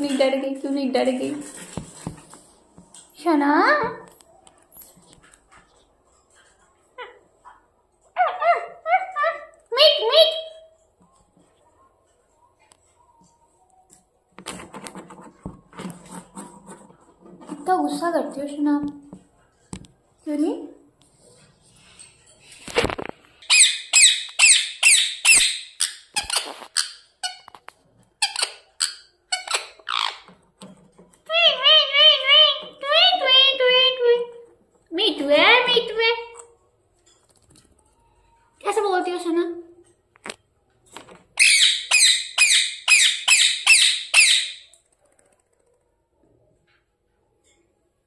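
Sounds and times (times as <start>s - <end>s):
parrot screeching: 23.4s - 27.4s, 28.2s - 30.3s, 31.3s - 33.6s, 41.4s - 44.7s.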